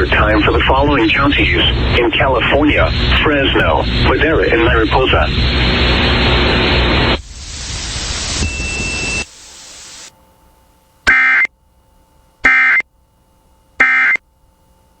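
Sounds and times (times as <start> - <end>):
loud hiss: 5.4 - 10.2
screeching digital data tones: 7.5 - 10.1.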